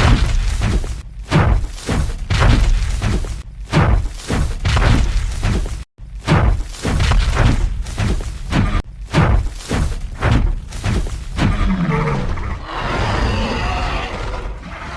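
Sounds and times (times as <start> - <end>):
heavy footstep thuds: 0.0 - 11.6.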